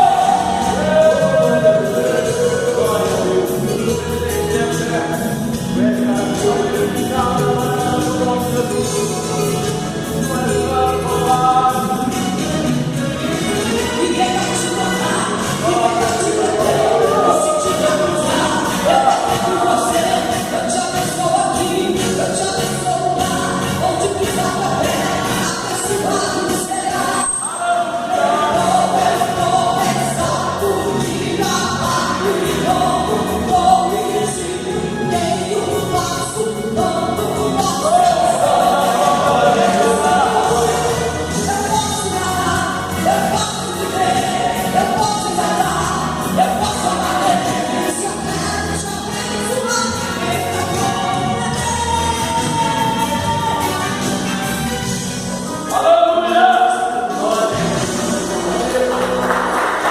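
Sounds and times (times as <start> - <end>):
instrumental backing track: 0.0 - 59.9
woman singing: 13.2 - 54.8.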